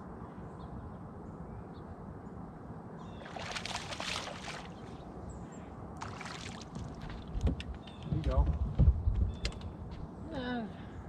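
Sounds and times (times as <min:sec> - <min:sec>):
low rumble of moving water: 0:02.4 - 0:11.0
water splashing: 0:03.2 - 0:05.0, 0:06.0 - 0:07.4.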